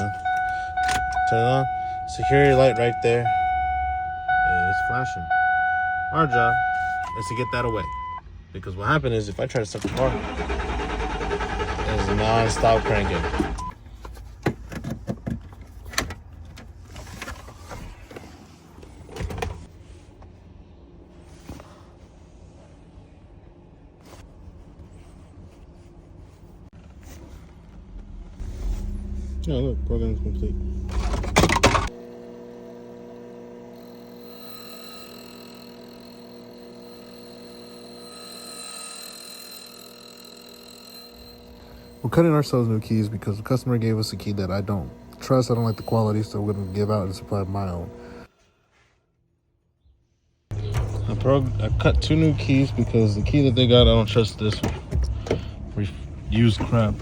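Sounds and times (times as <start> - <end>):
low steady hum: 0.0 - 38.2
electrical hum: 20.5 - 48.3
thin high-pitched whine: 32.8 - 48.1.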